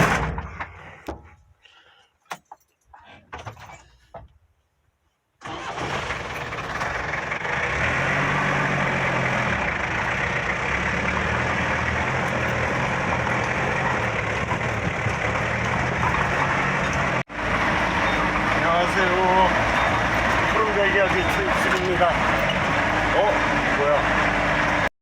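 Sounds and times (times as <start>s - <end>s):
road and cabin noise: 5.4s - 24.9s
truck engine running: 5.4s - 24.9s.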